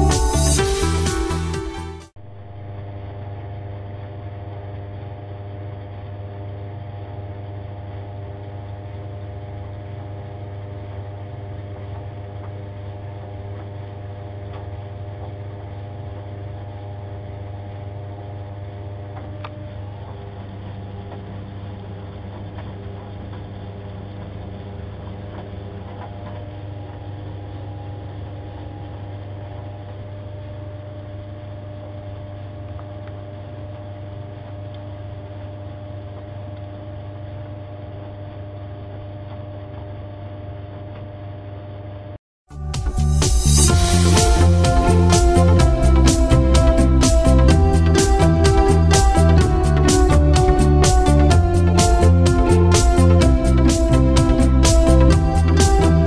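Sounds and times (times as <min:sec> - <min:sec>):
tumble dryer humming: 0:42.5 - 0:56.0.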